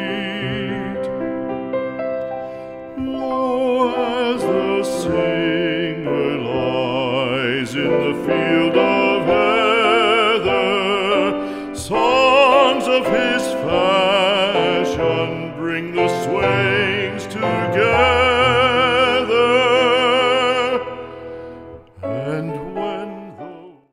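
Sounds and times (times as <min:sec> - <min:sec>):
operatic classical singing: 0:00.0 - 0:01.7, 0:02.4 - 0:23.9.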